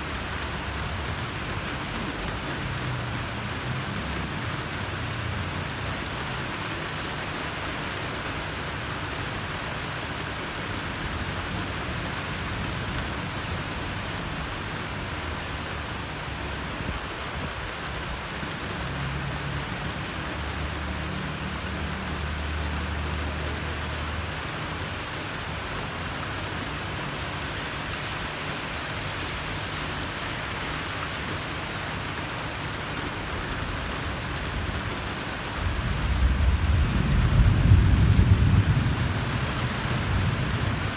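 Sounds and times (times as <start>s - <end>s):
heavy rain hissing: 0.0s - 40.9s
low rumble: 35.6s - 39.2s.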